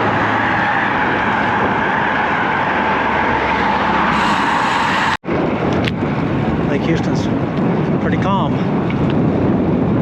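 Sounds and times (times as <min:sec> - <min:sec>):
bicycle tyres on pavement: 0:00.0 - 0:06.7
wind on microphone: 0:00.9 - 0:10.0.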